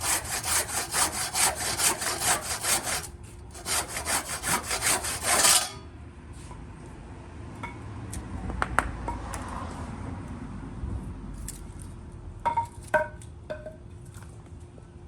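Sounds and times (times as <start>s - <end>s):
handsaw cutting wood: 0.0s - 5.8s.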